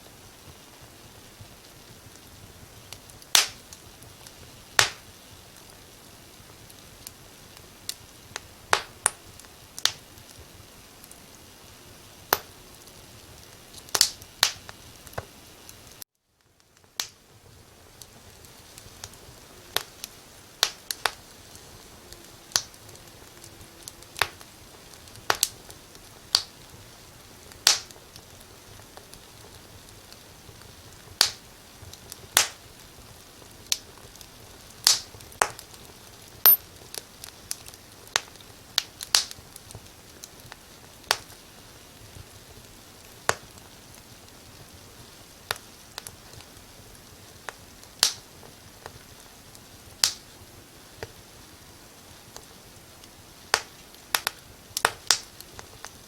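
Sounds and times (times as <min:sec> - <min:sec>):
faint steady hiss: 0:00.0 - 0:56.0
firewood popping and snapping: 0:25.1 - 0:26.5, 0:34.8 - 0:35.8.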